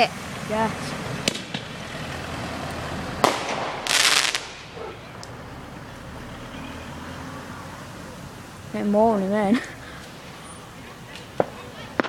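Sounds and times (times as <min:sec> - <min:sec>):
crackling firework burst: 0:00.0 - 0:06.6, 0:09.6 - 0:12.0
firework bang: 0:01.2 - 0:01.8, 0:03.2 - 0:04.8.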